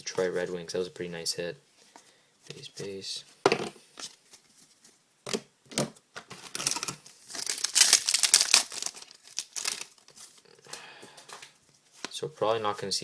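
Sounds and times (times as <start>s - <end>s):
foil wrapper crinkling: 6.5s - 10.4s
cards clicking: 7.4s - 10.0s.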